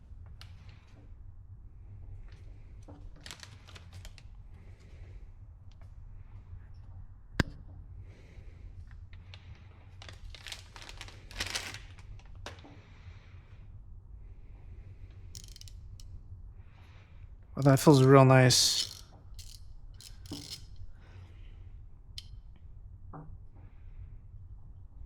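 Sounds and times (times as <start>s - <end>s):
plastic packaging crinkling: 3.2s - 4.1s, 10.0s - 12.0s.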